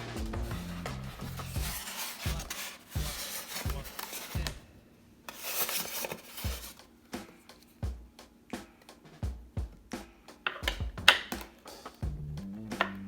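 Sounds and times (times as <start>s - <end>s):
background music with low beat: 0.0s - 4.6s, 6.4s - 13.0s
packaging rustling and scraping: 0.4s - 4.6s, 5.3s - 7.8s.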